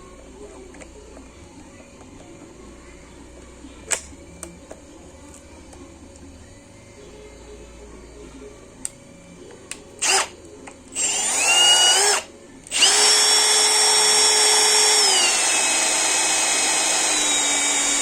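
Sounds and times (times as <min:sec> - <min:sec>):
cordless drill whining: 0:10.0 - 0:10.3, 0:11.0 - 0:18.0.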